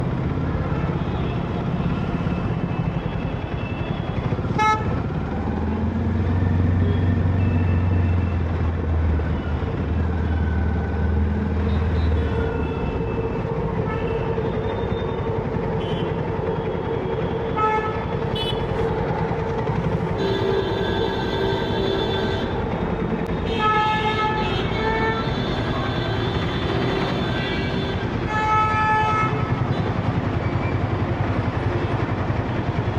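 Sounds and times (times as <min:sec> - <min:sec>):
heavy engine droning: 0:00.0 - 0:32.9
vehicle engines running: 0:00.0 - 0:32.9
car horns honking: 0:17.6 - 0:19.0.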